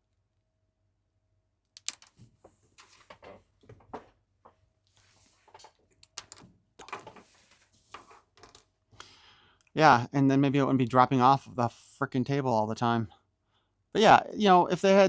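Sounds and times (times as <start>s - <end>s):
plastic parts clicking and tapping: 1.8s - 2.2s, 5.5s - 7.2s.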